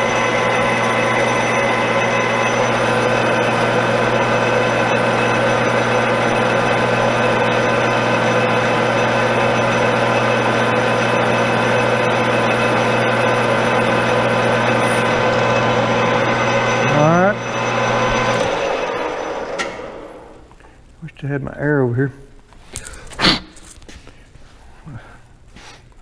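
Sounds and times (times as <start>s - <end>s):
metal lathe humming: 0.0s - 20.5s.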